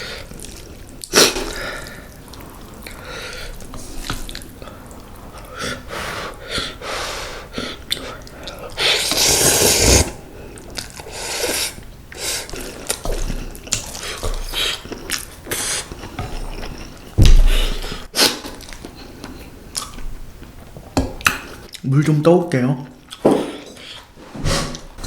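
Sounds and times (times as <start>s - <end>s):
slurping and chewing noodles: 7.4s - 20.0s.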